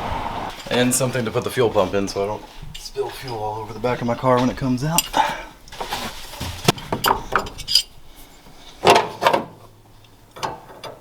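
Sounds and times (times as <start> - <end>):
metal hand tools clinking: 0.5 - 5.4, 6.6 - 8.0.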